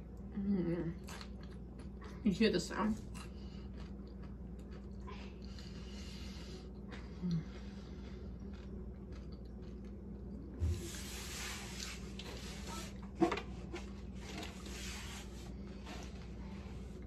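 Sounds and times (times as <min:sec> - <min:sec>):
chewing crunchy food: 0:00.9 - 0:10.6.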